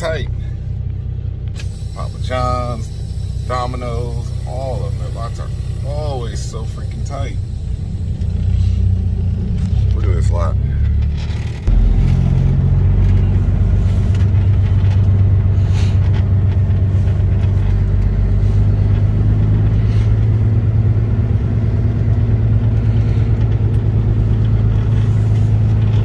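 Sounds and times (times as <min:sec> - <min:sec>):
truck diesel engine drone: 0:00.0 - 0:26.0.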